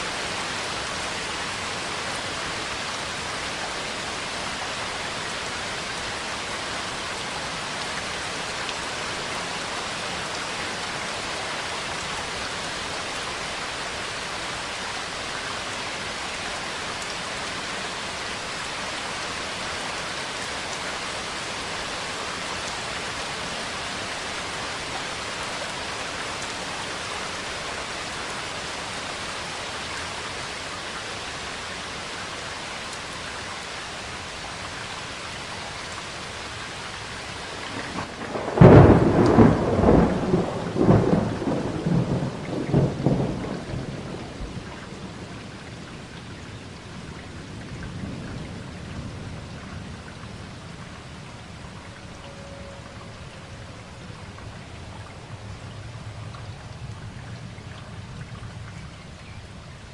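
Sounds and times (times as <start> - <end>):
rain hiss: 0.0 - 59.9
thunder rumbling: 37.7 - 45.4.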